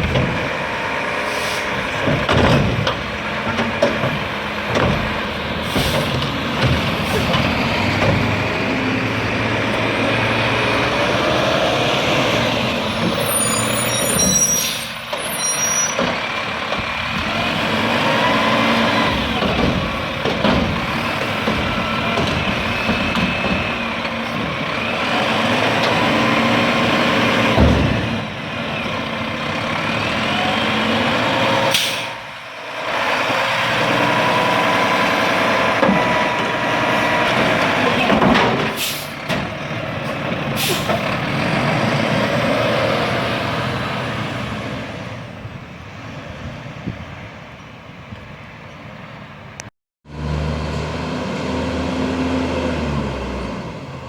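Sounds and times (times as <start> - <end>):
garbage truck engine revving: 0.0 - 15.3, 15.9 - 46.6, 50.0 - 54.0
hydraulic whines: 9.2 - 32.5.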